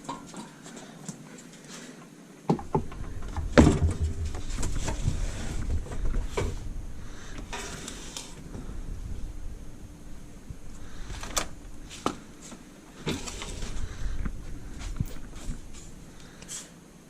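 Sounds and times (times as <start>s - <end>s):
knocks and clunks of tools: 2.5s - 5.1s
low rumbling handling noise: 2.6s - 16.4s.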